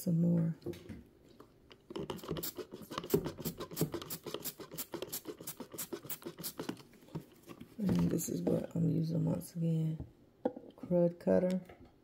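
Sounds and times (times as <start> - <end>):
scratching and scrubbing strokes: 2.0 - 7.8.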